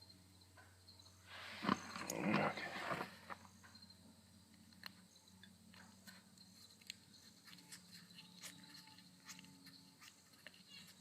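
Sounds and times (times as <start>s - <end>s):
faint low hum: 0.0s - 11.0s
faint small clicks: 4.5s - 7.7s.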